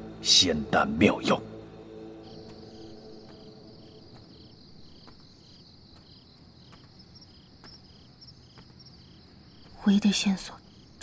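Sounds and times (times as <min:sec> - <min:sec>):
crickets trilling: 0:00.0 - 0:11.0.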